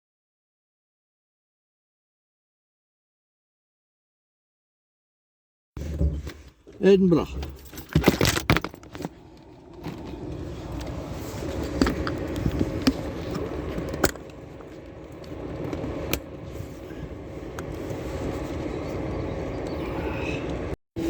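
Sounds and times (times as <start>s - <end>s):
car engine running: 7.2s - 20.7s.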